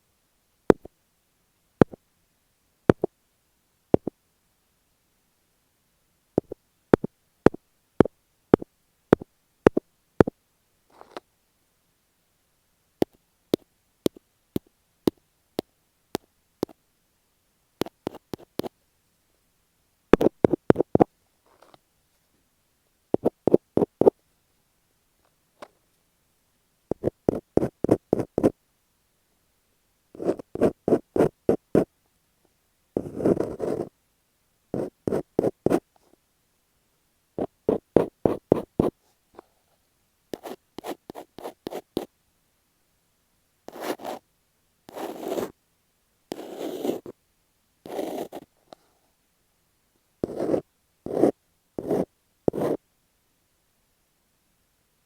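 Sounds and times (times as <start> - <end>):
fingertips tapping on tape: 6.4 - 10.3, 13.0 - 15.2, 17.8 - 18.7, 20.2 - 21.1, 23.2 - 24.1, 26.9 - 28.5.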